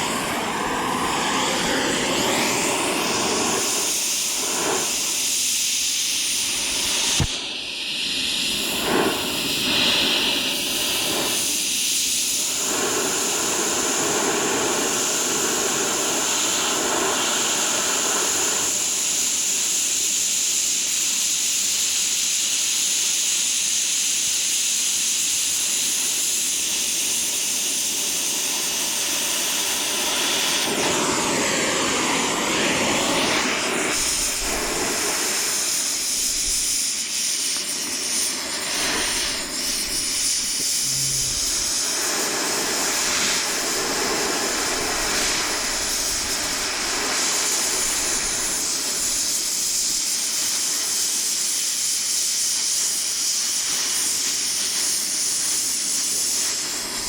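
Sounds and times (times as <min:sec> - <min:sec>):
welding arc crackling: 0:36.1 - 0:41.9.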